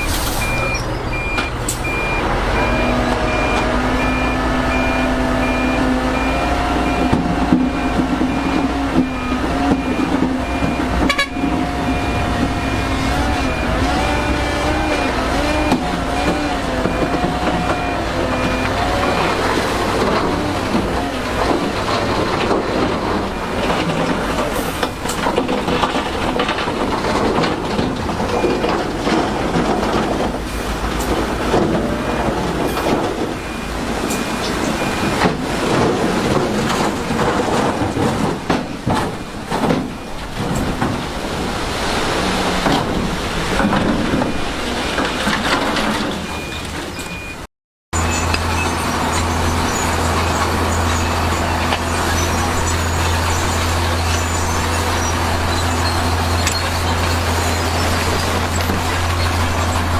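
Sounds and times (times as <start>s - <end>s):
reversing alarm beeping: 0.0s - 20.6s, 32.0s - 35.4s
diesel engines working: 0.0s - 59.9s
continuous clatter: 6.9s - 41.7s, 42.4s - 59.9s.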